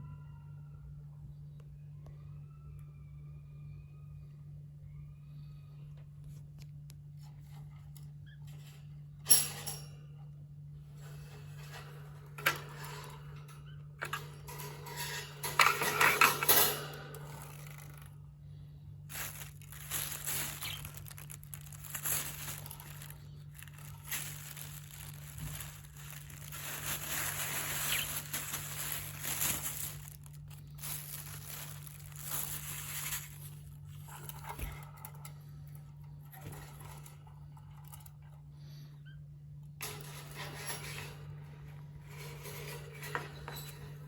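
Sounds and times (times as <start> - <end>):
low hum: 17.0 - 38.9
birds cracking seeds: 19.1 - 33.7.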